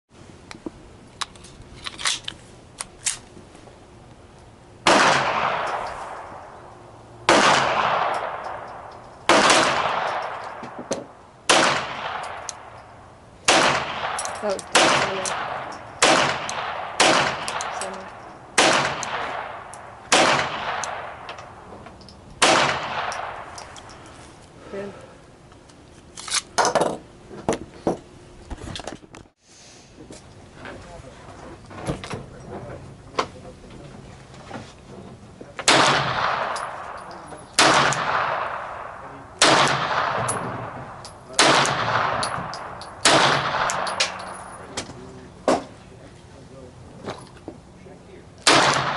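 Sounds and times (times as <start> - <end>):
firearm handling clicks: 1.2 - 3.3, 12.1 - 12.9, 14.0 - 18.2, 18.9 - 24.1, 41.0 - 44.6
gunshots with long echo: 4.8 - 6.6, 7.2 - 10.8, 11.5 - 12.8, 13.4 - 21.6, 22.4 - 23.6, 35.7 - 37.0, 37.6 - 44.6, 48.4 - 48.9.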